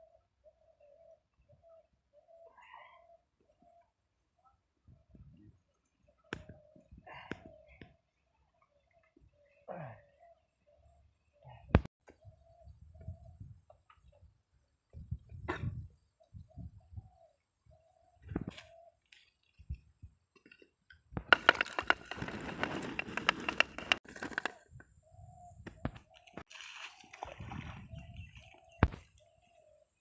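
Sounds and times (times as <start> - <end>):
rustling and scraping with clicks: 20.4 - 24.8.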